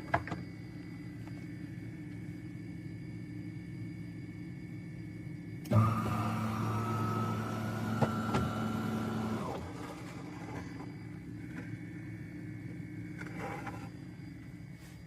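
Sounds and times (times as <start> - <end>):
faint background hum: 0.0 - 15.0
espresso machine humming: 5.6 - 15.0.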